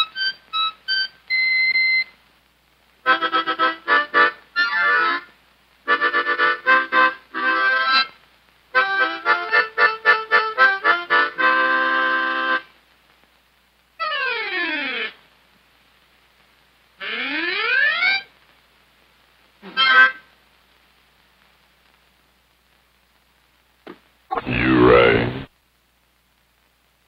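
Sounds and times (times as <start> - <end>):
accordion playing: 3.1 - 5.2, 5.9 - 8.1, 8.8 - 12.6.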